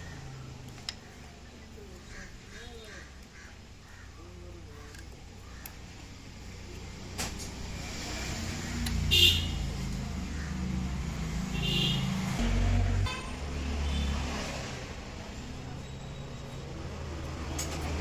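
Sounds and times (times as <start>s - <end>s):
vehicle engines passing: 0.0s - 18.0s
car horn toots: 9.1s - 9.5s, 11.6s - 14.2s.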